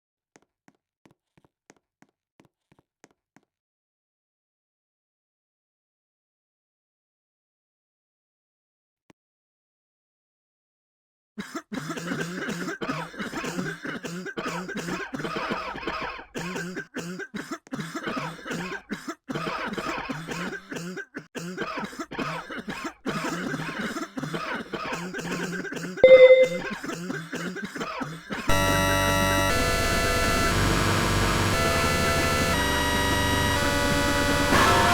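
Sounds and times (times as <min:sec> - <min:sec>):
person coughing: 0:11.4 - 0:28.5
loud steady tone: 0:26.0 - 0:26.7, 0:28.5 - 0:34.9.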